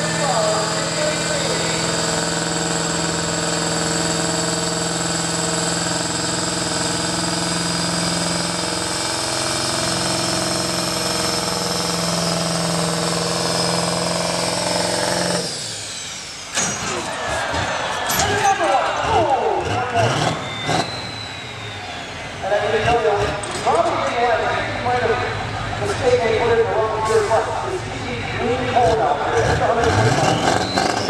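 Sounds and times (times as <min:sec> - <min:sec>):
truck engine running under load: 0:00.0 - 0:18.1, 0:18.9 - 0:31.0.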